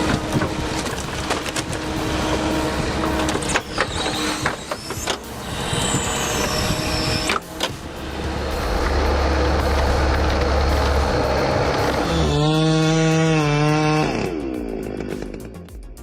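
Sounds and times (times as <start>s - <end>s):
sharp cracks and knocks: 0.0s - 1.9s
high whine falling in pitch: 0.0s - 13.6s
heavy machinery humming: 0.0s - 15.2s.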